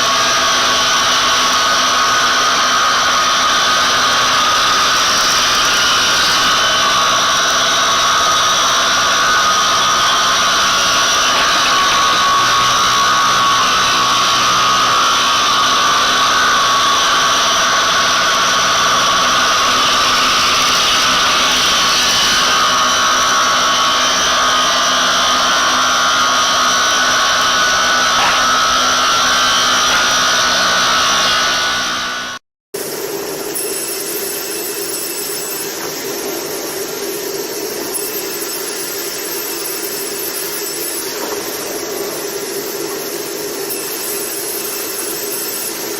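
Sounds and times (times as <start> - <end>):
sawmill machinery whining: 0.0 - 45.9.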